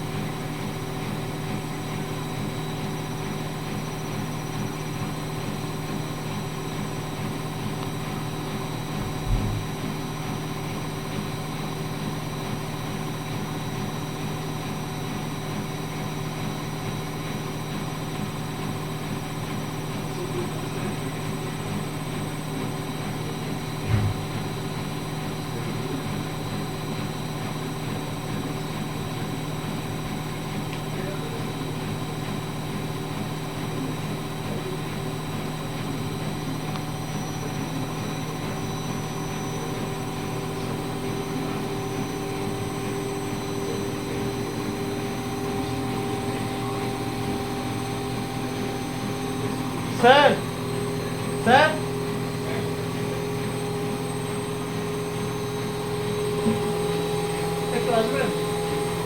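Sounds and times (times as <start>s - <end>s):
washing machine motor hum: 0.0s - 59.0s
dull low thump: 9.0s - 9.6s, 23.8s - 24.4s.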